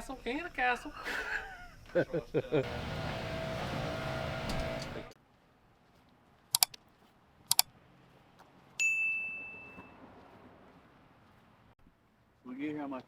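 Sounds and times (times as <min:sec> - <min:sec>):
quick double clicks: 0:06.6 - 0:06.8
bright bell-like ding: 0:08.8 - 0:09.9.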